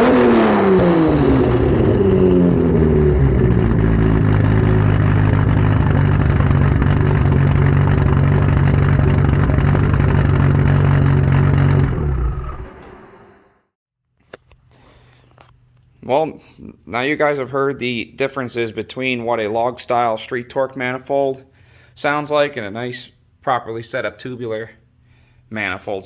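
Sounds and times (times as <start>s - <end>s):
car engine idling: 0.0s - 13.5s.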